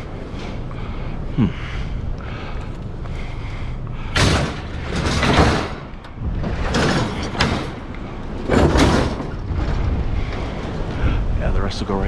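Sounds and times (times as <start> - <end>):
pallets scraping and knocking: 4.2 - 11.3
wind buffeting microphone: 6.0 - 6.8, 7.4 - 12.0.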